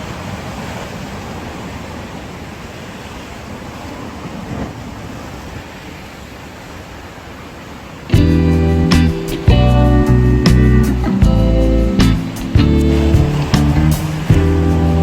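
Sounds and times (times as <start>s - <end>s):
sea surf washing on shore: 0.0s - 15.0s
strummed guitar music: 8.1s - 15.0s
wind on microphone: 9.1s - 15.0s.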